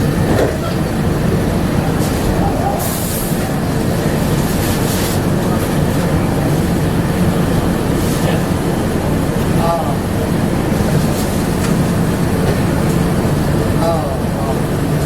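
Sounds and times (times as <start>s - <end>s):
people-mover car rumbling: 0.0s - 15.0s.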